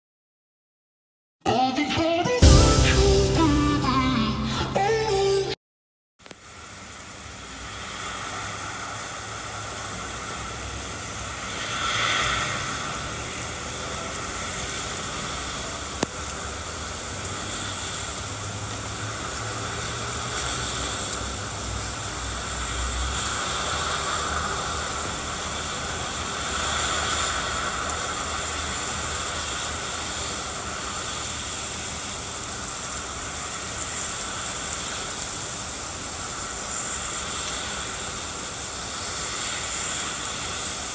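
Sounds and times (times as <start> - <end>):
steady rain falling: 6.4 - 40.9.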